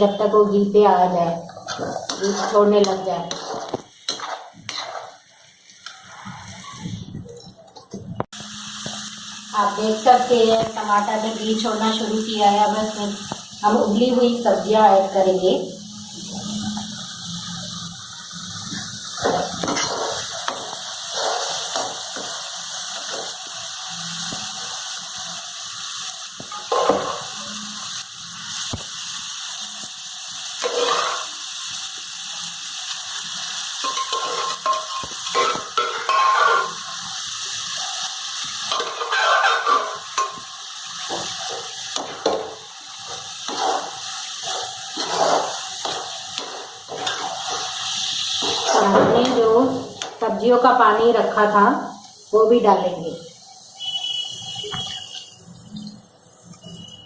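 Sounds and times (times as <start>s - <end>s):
food sizzling in a pan: 0.0s - 57.0s
spoon scraping and knocking pan: 1.5s - 6.4s, 19.2s - 23.5s, 26.4s - 27.3s, 30.6s - 31.3s, 33.8s - 36.8s, 38.6s - 50.1s.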